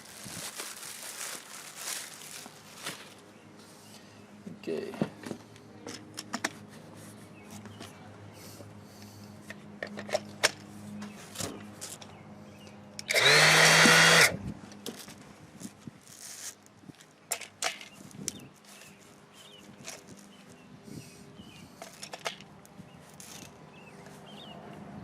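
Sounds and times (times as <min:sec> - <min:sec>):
tool handling clicks and knocks: 0:04.9 - 0:06.7, 0:09.4 - 0:12.2, 0:17.0 - 0:18.9, 0:21.8 - 0:22.5
sander motor whining: 0:13.0 - 0:14.4.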